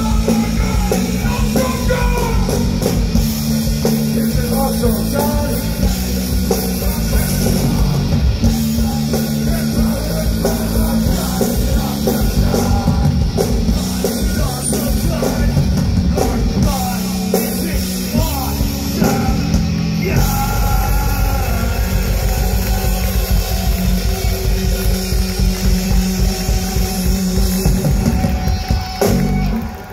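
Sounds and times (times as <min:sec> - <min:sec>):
person singing: 0:00.0 - 0:02.7, 0:03.8 - 0:23.6
loud rock music: 0:00.0 - 0:29.9.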